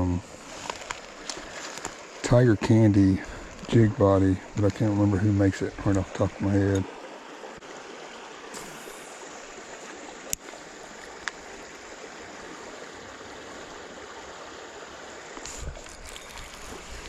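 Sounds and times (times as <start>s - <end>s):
creek water running: 0.0s - 17.0s
short sharp clicks: 8.6s - 9.3s.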